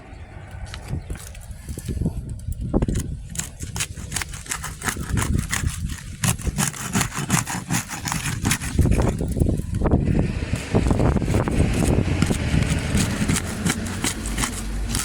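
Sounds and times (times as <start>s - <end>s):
low rumble: 0.0s - 3.4s, 8.8s - 15.0s
tool scraping between shingles: 0.7s - 15.0s
sealant crackling and tearing: 0.8s - 9.8s, 10.5s - 15.0s.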